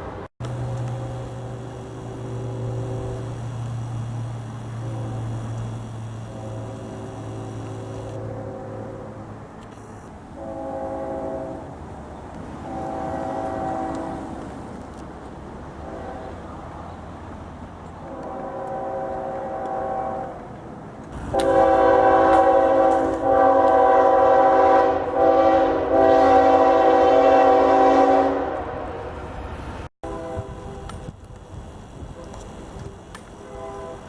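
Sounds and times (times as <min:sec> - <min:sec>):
locomotive air horn chord: 0:00.4 - 0:09.3, 0:10.3 - 0:11.8, 0:12.5 - 0:14.4, 0:15.8 - 0:16.7, 0:18.0 - 0:20.4, 0:21.2 - 0:29.2, 0:30.0 - 0:31.2, 0:32.1 - 0:34.0.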